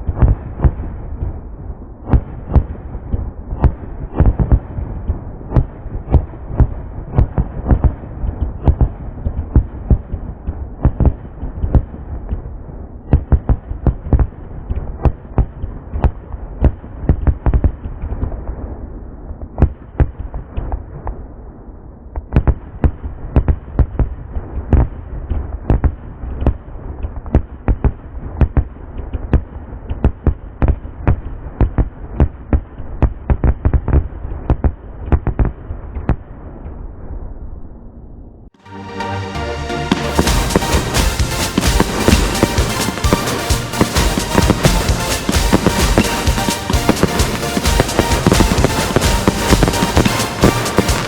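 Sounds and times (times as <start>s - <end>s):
firework bangs: 39.9s - 51.0s.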